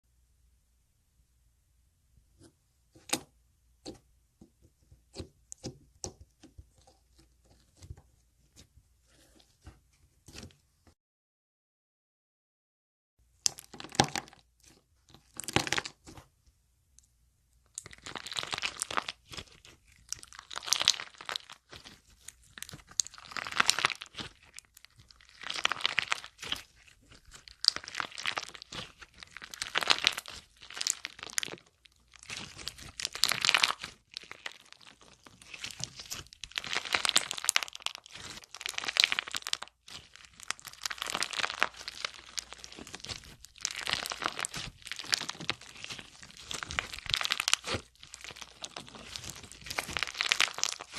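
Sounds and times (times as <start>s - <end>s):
slime crackling and crunching: 13.4s - 16.2s, 17.7s - 50.9s.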